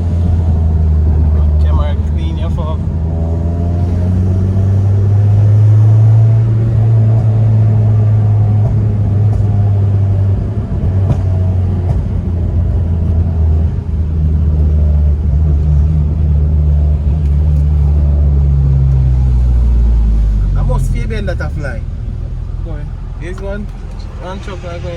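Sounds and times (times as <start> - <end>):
car engine and exhaust droning: 0.0 - 24.9.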